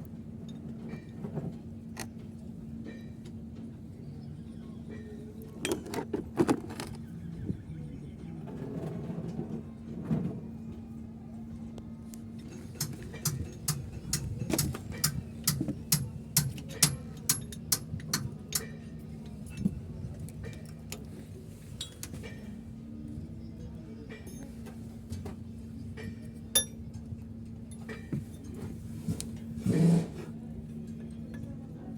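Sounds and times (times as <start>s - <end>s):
metal-on-metal taps: 12.8s - 18.7s.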